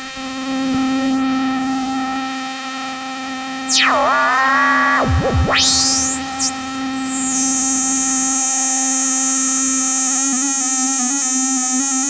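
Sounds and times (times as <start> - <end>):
low synthesizer drone: 2.9 - 11.6
sweeping synthesizer tone: 2.9 - 12.0.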